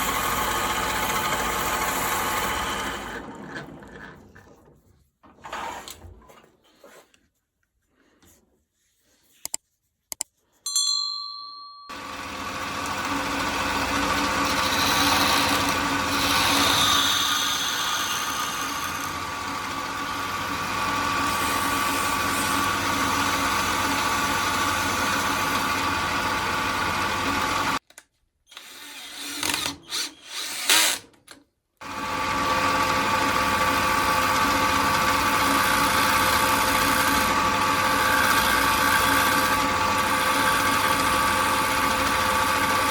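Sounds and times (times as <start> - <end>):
electric power tool running: 0.0 - 3.7, 12.0 - 27.8, 31.8 - 42.9.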